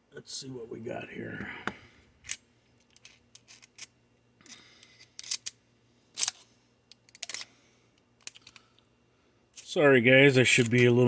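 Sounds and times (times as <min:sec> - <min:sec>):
metal tools clicking: 0:02.3 - 0:03.9, 0:04.5 - 0:05.6, 0:06.2 - 0:07.5, 0:08.2 - 0:08.6.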